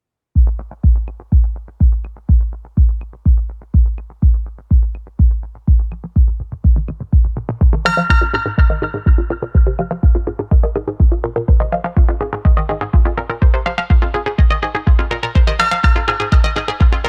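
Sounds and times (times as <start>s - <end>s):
deep bass: 0.4s - 17.0s
electronic dance music: 0.4s - 17.0s
kick drum: 0.4s - 17.0s
bright synthesizer: 7.8s - 17.0s.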